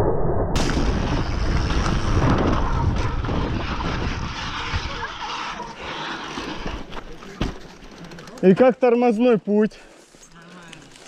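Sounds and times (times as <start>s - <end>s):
bike tyre skidding on dirt: 1.2s - 8.6s.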